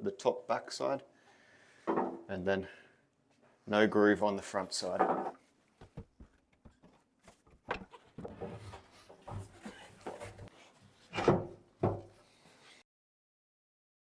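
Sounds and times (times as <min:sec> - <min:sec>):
wood scraping on wood: 0:06.6 - 0:11.5.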